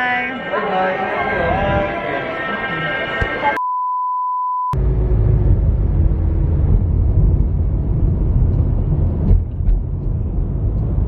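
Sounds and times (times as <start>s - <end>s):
electronic beep: 1.2s - 4.8s
car road and engine rumble: 4.8s - 11.0s.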